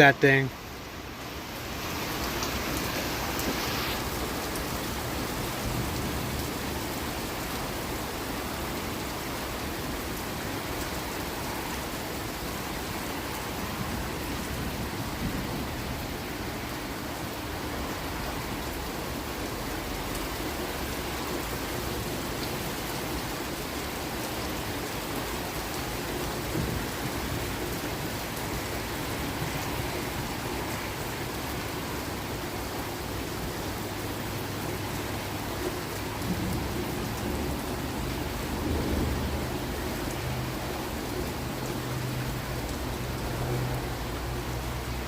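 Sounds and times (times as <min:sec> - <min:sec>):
heavy rain pouring: 0:00.0 - 0:45.0
low thunder rumbling: 0:36.2 - 0:40.5.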